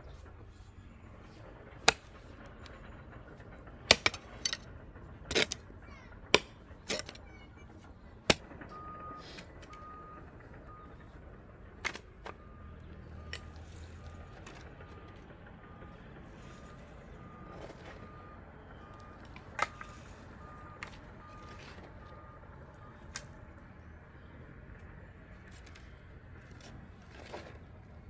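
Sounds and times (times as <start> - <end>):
low steady rumble: 0.0 - 28.0
reversing alarm beeping: 8.4 - 11.7, 12.3 - 24.5.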